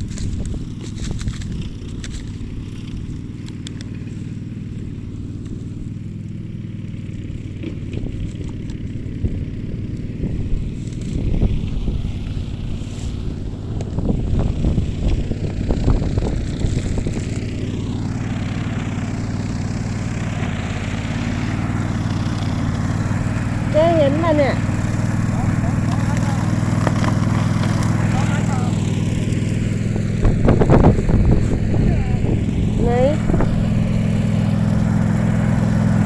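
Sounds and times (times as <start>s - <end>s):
small petrol engine running: 0.0s - 36.0s.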